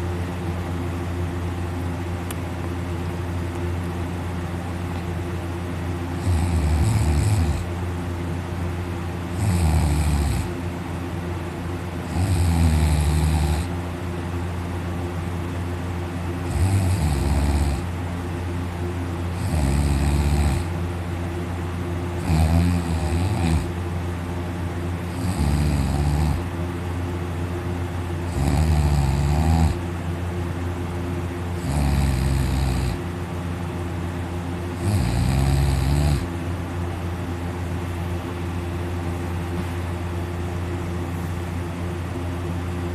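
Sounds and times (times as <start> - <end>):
steady low hum: 0.0 - 42.9
person snoring loudly: 6.2 - 7.7, 9.3 - 10.6, 12.0 - 13.7, 16.5 - 17.9, 19.3 - 20.7, 22.2 - 23.7, 25.1 - 26.5, 28.2 - 29.8, 31.6 - 33.0, 34.8 - 36.3.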